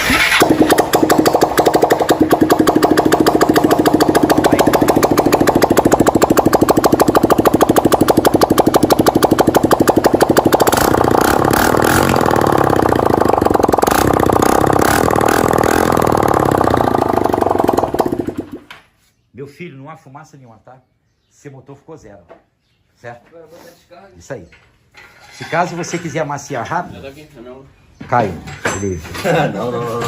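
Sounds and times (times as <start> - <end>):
motorcycle engine popping: 0.0 - 18.9.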